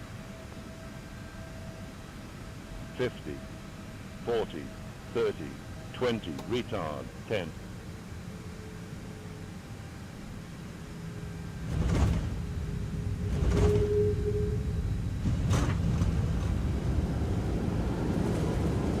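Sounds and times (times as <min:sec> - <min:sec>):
heavy rumble of aircraft landing: 0:00.0 - 0:19.0
brief steady tone: 0:00.3 - 0:07.5, 0:12.6 - 0:15.0.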